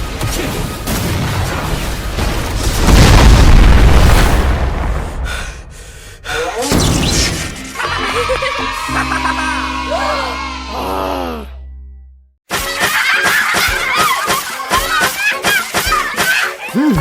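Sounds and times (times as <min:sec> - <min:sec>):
music: 0:06.7 - 0:17.0.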